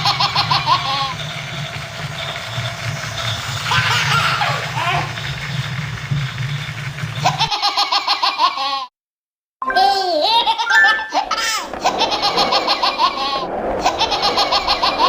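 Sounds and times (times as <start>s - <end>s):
baby giggling: 9.7s - 15.0s.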